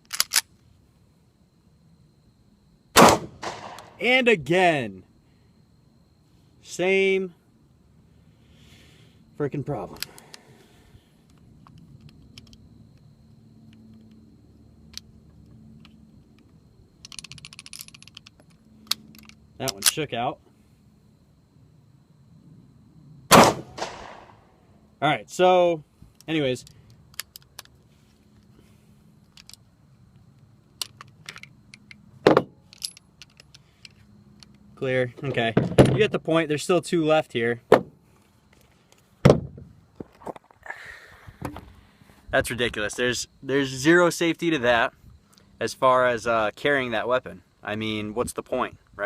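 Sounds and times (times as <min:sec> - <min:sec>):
pistol metallic clicks: 0:00.0 - 0:00.5, 0:03.0 - 0:04.0, 0:15.8 - 0:20.0, 0:26.2 - 0:27.8, 0:32.7 - 0:34.6
pistol clack: 0:03.0 - 0:04.0, 0:23.4 - 0:24.4
rattling clicks: 0:17.0 - 0:20.0, 0:32.6 - 0:34.6.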